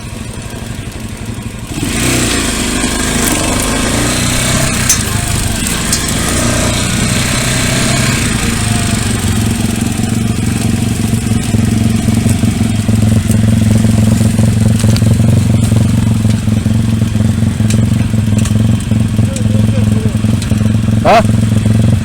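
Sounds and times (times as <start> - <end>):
motorbike engine running: 0.0 - 22.0.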